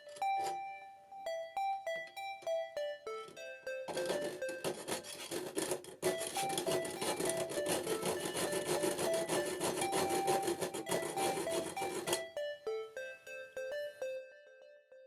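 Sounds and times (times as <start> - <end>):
hand tool rasping cymbal: 3.9 - 12.3.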